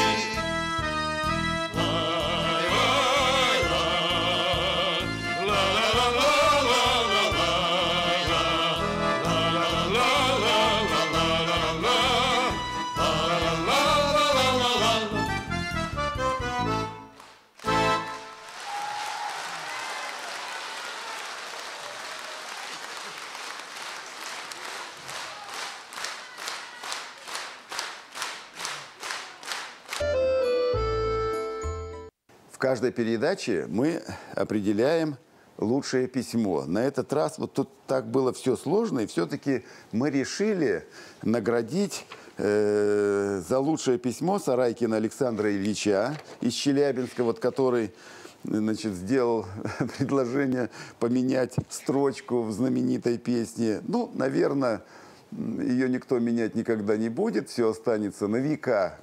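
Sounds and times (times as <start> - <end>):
accordion-led band playing: 0.0 - 18.4, 30.0 - 32.1
audience applauding: 17.2 - 30.2.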